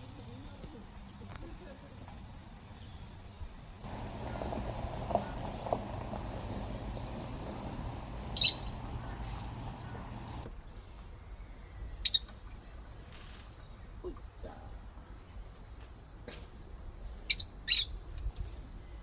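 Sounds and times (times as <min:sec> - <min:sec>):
high bird chirp: 0:03.9 - 0:10.5
insect chirring: 0:03.9 - 0:10.5.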